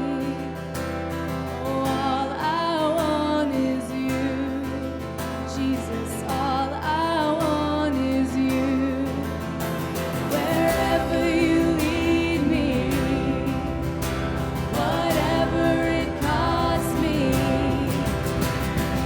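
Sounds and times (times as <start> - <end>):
person singing: 10.1 - 19.0.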